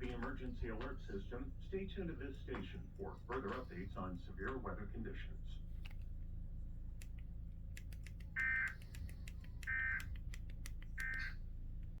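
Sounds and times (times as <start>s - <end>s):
faint clicks: 7.0s - 12.0s.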